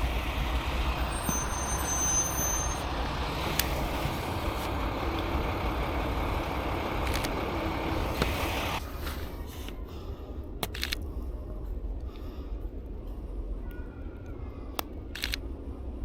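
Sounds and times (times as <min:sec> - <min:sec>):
high-pitched squeal: 0:00.0 - 0:06.8
road traffic rumble: 0:00.0 - 0:16.0
sharp clicks: 0:07.0 - 0:07.5.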